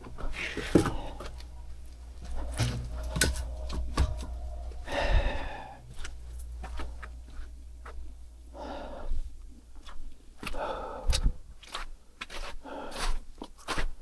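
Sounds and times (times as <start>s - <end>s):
heavy breathy exhales: 4.8s - 6.2s.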